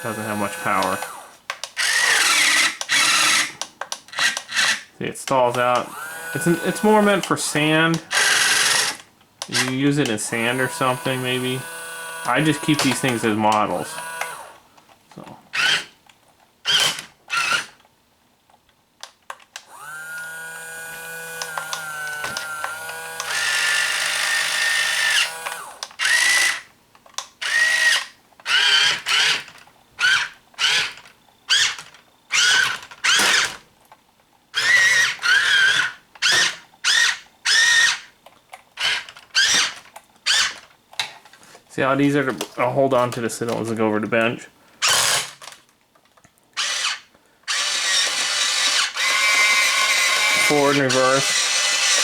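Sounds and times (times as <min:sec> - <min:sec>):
small electric motors whining: 0:00.0 - 0:03.6, 0:05.8 - 0:14.6, 0:19.7 - 0:26.7, 0:27.4 - 0:33.6, 0:34.6 - 0:38.0, 0:44.8 - 0:45.3, 0:46.6 - 0:52.0.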